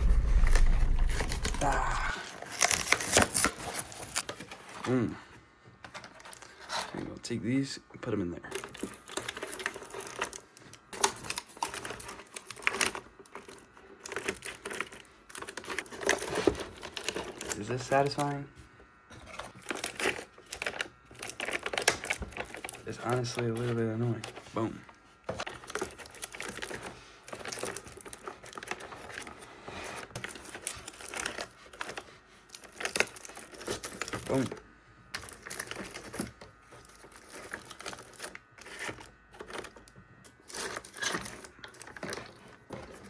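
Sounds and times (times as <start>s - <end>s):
sharp knock: 0.0s - 2.1s
foil pouches clicking and crinkling: 0.0s - 4.7s, 5.9s - 6.8s, 8.5s - 18.4s, 19.1s - 43.0s.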